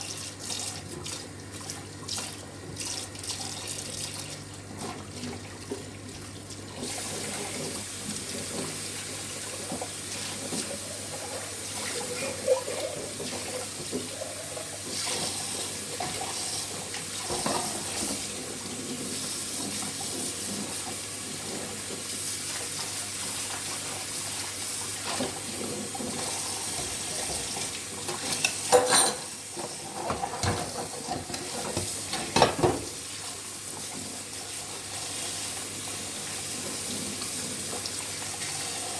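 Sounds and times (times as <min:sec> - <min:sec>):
dishes clattering: 0:17.2 - 0:18.2, 0:26.8 - 0:32.9
tap running into sink: 0:26.0 - 0:33.0.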